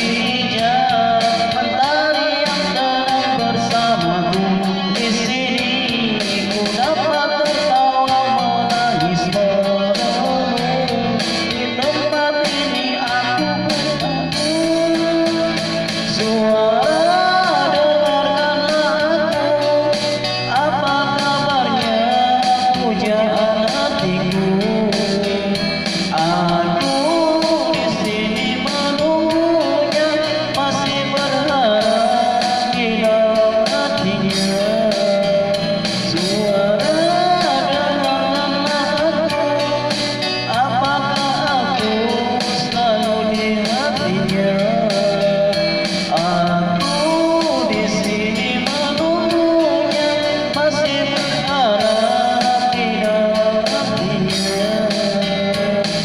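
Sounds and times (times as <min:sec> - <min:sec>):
band music with guitar: 0:00.0 - 0:56.0.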